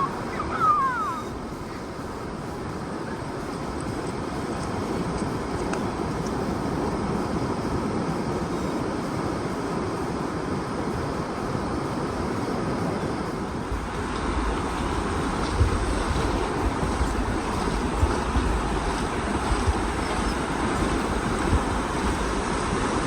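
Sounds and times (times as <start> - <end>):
waves breaking: 0.0 - 23.0
wind buffeting microphone: 0.0 - 23.0.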